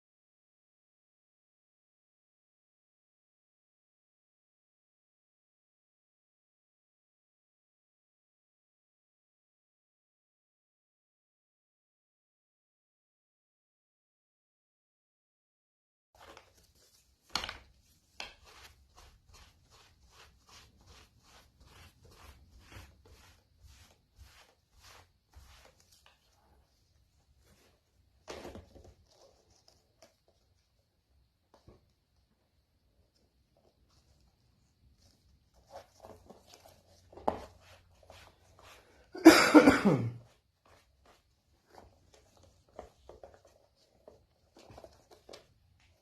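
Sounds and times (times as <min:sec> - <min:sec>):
faint taps and scrapes: 0:16.2 - 0:21.1, 0:31.4 - 0:32.4, 0:33.1 - 0:38.8
applicator rubbing on leather: 0:18.1 - 0:26.4, 0:35.0 - 0:39.1
person coughing: 0:39.2 - 0:40.2.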